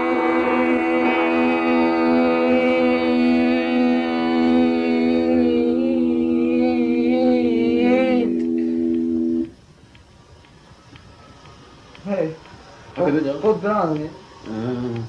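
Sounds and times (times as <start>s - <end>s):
band holding a chord: 0.0s - 9.5s
wavering hummed note: 0.0s - 9.6s.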